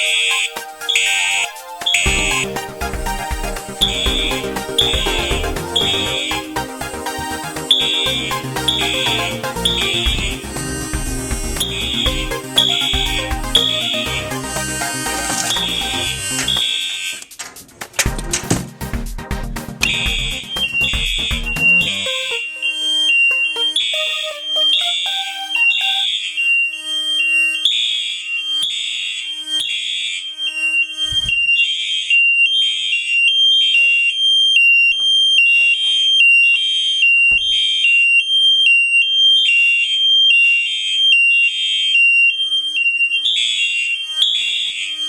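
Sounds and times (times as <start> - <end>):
fire alarm horn blasts: 0.0 - 16.9, 22.0 - 45.0
steady high tone: 0.0 - 16.9, 19.8 - 27.6.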